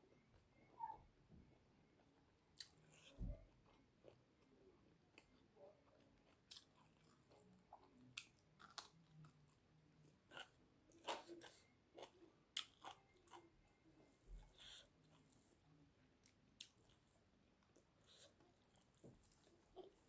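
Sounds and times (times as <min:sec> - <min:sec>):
chewing and mouth clicks: 0:05.1 - 0:09.6, 0:10.2 - 0:13.5, 0:16.2 - 0:20.0.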